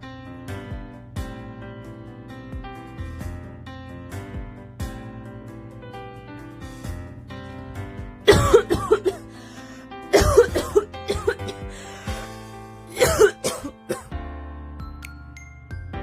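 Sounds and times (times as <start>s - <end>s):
background music: 0.0s - 16.0s
person coughing: 8.3s - 9.4s, 10.1s - 11.9s, 12.9s - 14.1s.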